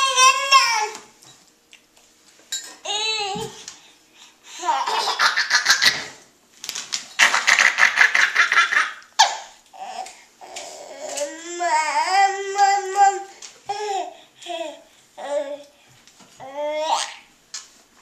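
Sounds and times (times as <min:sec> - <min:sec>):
baby laughing: 0:04.6 - 0:06.2, 0:07.2 - 0:10.0
baby babbling: 0:16.4 - 0:17.3.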